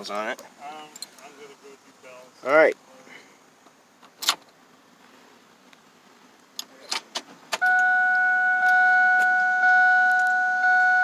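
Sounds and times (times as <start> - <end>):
pulsing car warning chime: 7.6 - 11.0.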